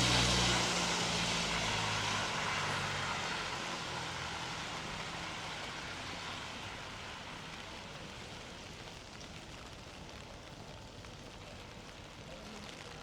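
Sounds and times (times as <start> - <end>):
passing vehicle engine drone: 0.0 - 4.7.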